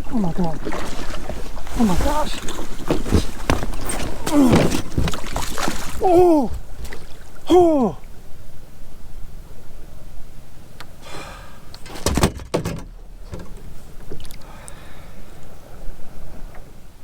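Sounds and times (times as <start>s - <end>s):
knocks and thumps on boat: 0.1s - 7.2s, 11.8s - 14.4s
steady low rumble: 12.8s - 17.0s.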